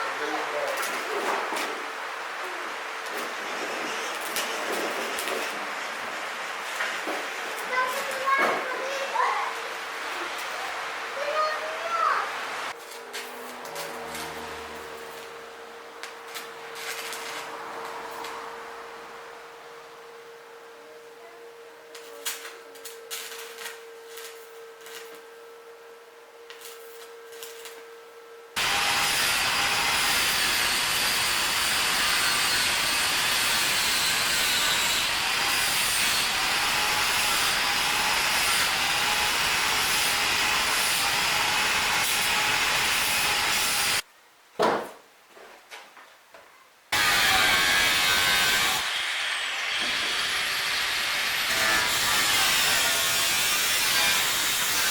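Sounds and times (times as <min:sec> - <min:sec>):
loud steady hissing: 0:00.0 - 0:12.8, 0:14.8 - 0:44.2, 0:46.9 - 0:54.9
sharp knock: 0:44.6 - 0:45.0.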